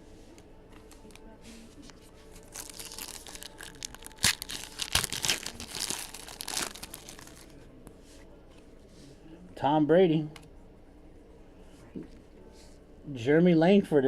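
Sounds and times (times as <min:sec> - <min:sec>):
plastic wrapper crinkling and tearing: 0:02.3 - 0:07.6.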